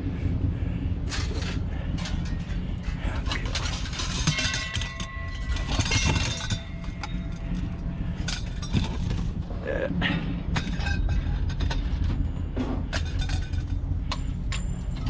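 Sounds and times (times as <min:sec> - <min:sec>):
low rumble: 0:00.0 - 0:15.0
scrap metal clanking: 0:01.0 - 0:15.0
metal piece ringing: 0:01.1 - 0:09.3.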